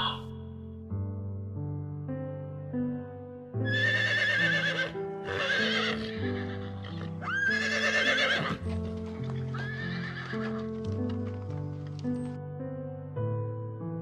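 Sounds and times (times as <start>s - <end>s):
background music with held notes: 0.0s - 14.0s
horse whinnying: 3.7s - 8.7s, 9.3s - 10.7s.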